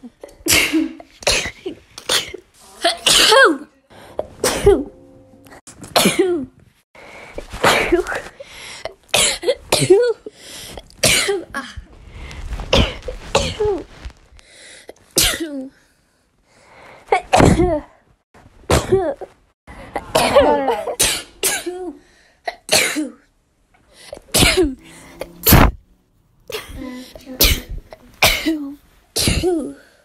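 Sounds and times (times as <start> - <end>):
person sneezing: 0.4 - 3.6, 7.5 - 8.3, 19.9 - 22.0, 24.1 - 25.8, 27.4 - 29.8.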